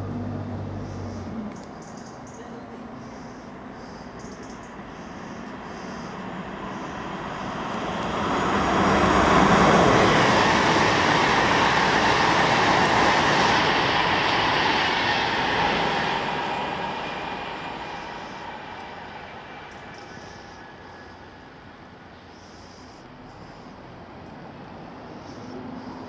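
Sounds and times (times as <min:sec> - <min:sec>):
train wheels on rails: 0:03.6 - 0:23.4.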